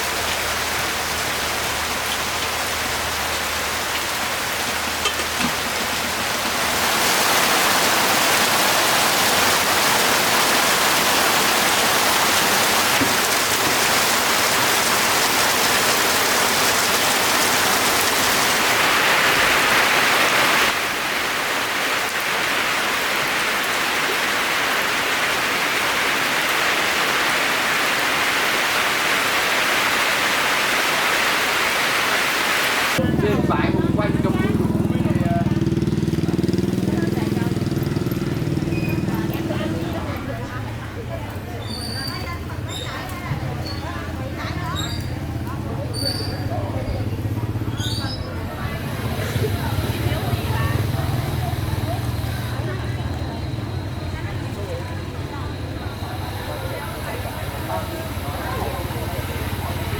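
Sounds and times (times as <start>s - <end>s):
hiss of falling water: 0.0s - 33.0s, 48.6s - 59.9s.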